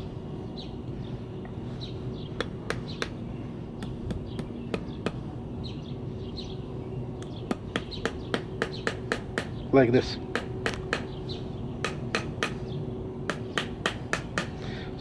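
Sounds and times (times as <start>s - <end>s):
small birds chirping: 0.0s - 15.0s
hammer tapping on metal: 2.4s - 5.4s, 7.2s - 9.7s, 10.3s - 14.7s.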